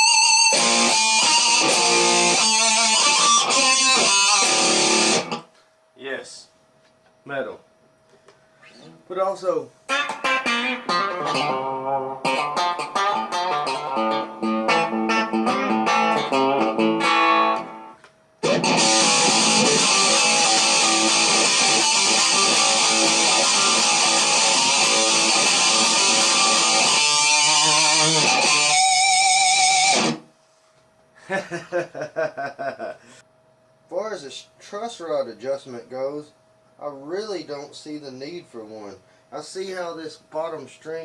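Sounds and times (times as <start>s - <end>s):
distorted electric guitar riff: 0.0s - 5.5s, 9.9s - 30.3s
distorted guitar chords ringing: 0.0s - 5.5s, 9.9s - 30.3s.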